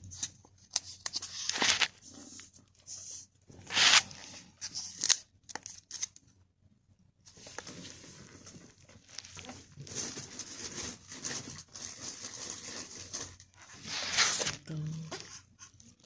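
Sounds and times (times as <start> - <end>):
wrapper crinkling and tearing: 3.7 - 6.2, 7.4 - 14.6.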